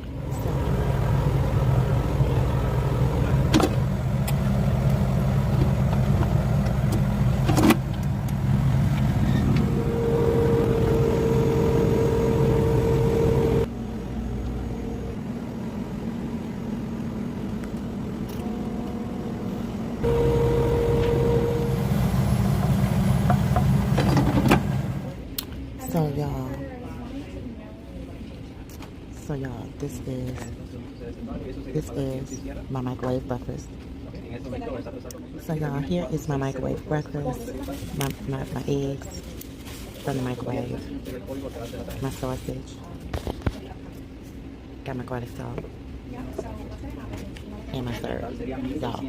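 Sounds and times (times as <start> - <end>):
microwave oven humming: 0.0 - 26.6.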